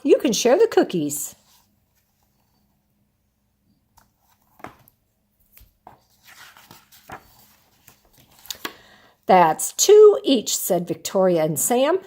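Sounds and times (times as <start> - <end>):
paper rustling: 4.0 - 8.8.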